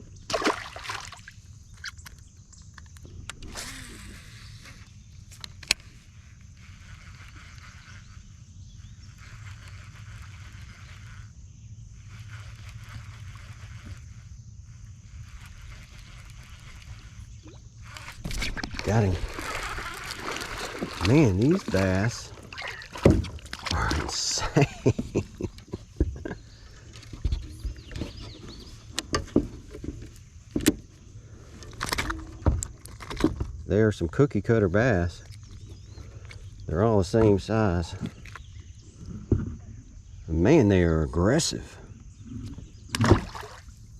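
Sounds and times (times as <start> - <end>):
high insect drone: 0.0 - 43.9
knocks and taps in a kayak: 24.9 - 30.9.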